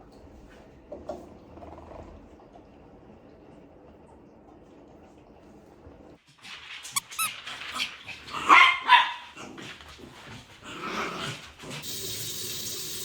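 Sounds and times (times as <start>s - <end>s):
dog barking: 8.3s - 9.5s.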